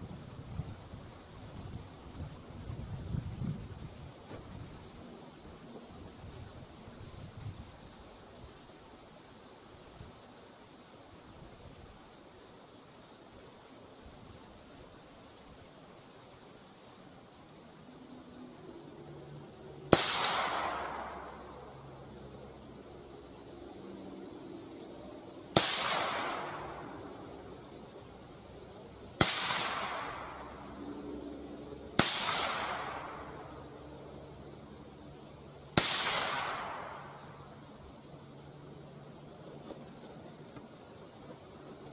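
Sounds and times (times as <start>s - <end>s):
rifle gunshot with echo: 19.9s - 21.5s, 25.6s - 27.0s, 29.2s - 30.6s, 32.0s - 33.5s, 35.8s - 37.3s.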